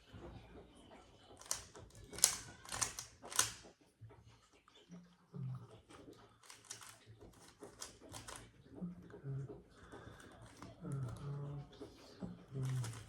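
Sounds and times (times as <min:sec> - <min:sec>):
plastic puzzle cube clicking: 0:01.4 - 0:03.6, 0:06.4 - 0:08.5, 0:12.5 - 0:13.0.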